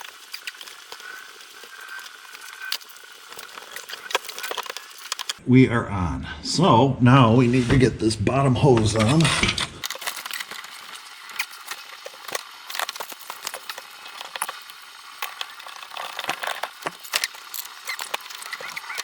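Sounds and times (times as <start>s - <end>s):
tools clicking and rattling: 8.9s - 19.0s.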